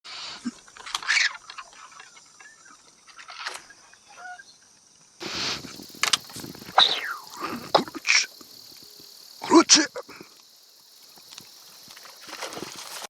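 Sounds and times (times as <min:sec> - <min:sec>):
high-pitched insect drone: 0:05.2 - 0:13.0.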